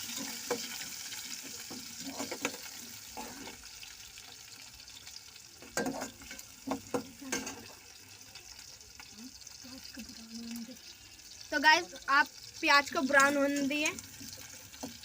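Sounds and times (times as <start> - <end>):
spoon scraping a pan: 0.0 - 3.7, 5.6 - 7.8
vegetables sizzling in hot oil: 0.0 - 15.0.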